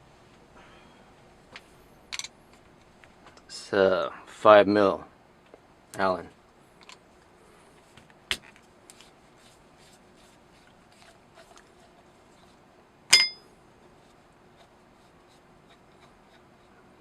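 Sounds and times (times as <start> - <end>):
sharp metallic clink: 13.1 - 13.4.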